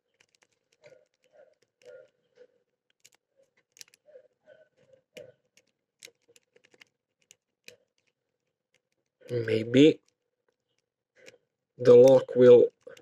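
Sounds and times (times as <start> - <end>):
lock pick clicking and scraping: 0.0 - 9.4.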